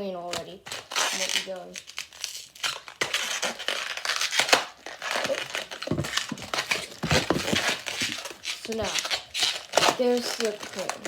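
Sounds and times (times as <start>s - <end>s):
balloon squeaks: 0.2s - 11.0s
rubber balloon rubbing and crinkling: 2.4s - 11.0s.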